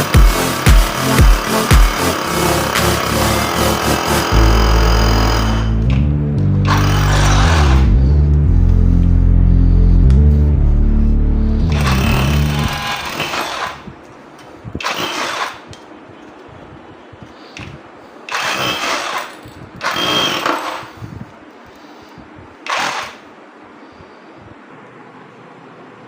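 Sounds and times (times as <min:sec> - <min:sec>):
cordless hammer drill bursts: 0:00.0 - 0:05.6, 0:12.3 - 0:13.8, 0:14.8 - 0:15.6, 0:18.3 - 0:20.9, 0:22.6 - 0:23.2.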